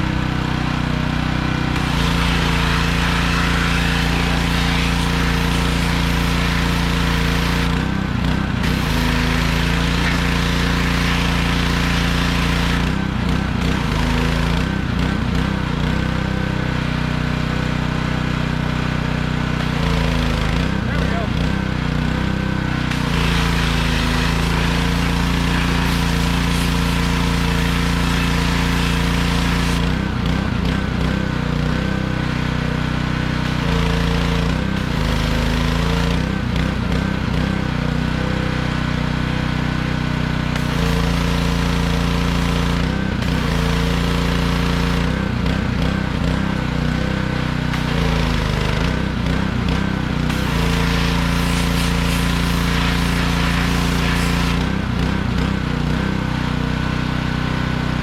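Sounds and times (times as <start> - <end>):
pressure washer engine running: 0.0 - 58.0
water spray hissing: 1.8 - 7.8, 8.6 - 12.8, 22.9 - 30.0, 40.6 - 45.0, 47.7 - 48.8, 50.3 - 54.7.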